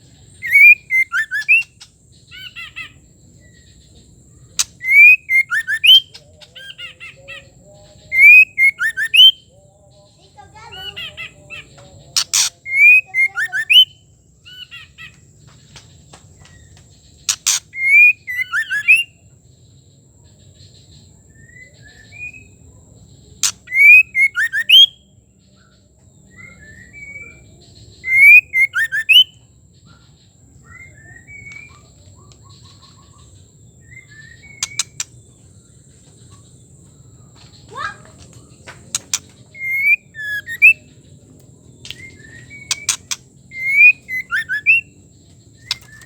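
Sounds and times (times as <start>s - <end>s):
soft bird chirps: 0.0s - 46.0s
bird whistled calls: 0.4s - 1.8s, 4.6s - 6.8s, 8.1s - 9.4s, 12.2s - 14.0s, 17.3s - 19.2s, 23.4s - 25.0s, 28.0s - 29.4s, 32.4s - 35.1s, 38.9s - 40.9s, 41.9s - 44.9s.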